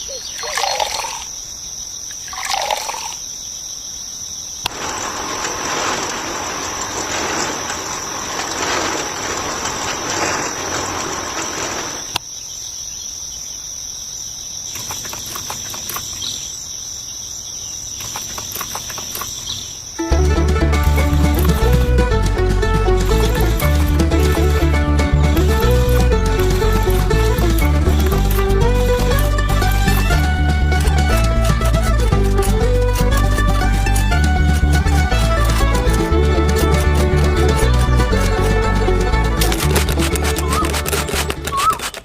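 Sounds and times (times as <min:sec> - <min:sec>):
running water: 0:00.0 - 0:01.4, 0:02.1 - 0:03.3
bird calls: 0:00.0 - 0:03.9, 0:14.4 - 0:20.0
high insect drone: 0:00.0 - 0:20.2.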